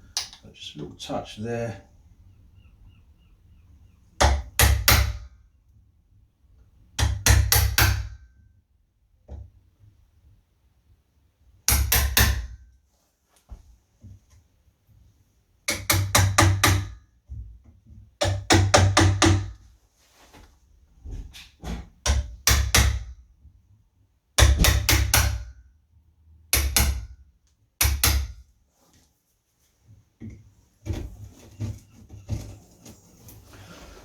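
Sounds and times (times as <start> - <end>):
hammer knocking on chisel: 18.2 - 19.6.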